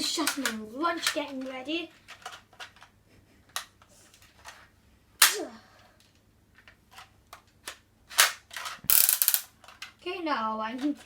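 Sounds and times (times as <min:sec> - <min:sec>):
plastic clicks: 0:00.2 - 0:01.5, 0:06.0 - 0:10.0
toy blaster firing snap: 0:08.2 - 0:09.5.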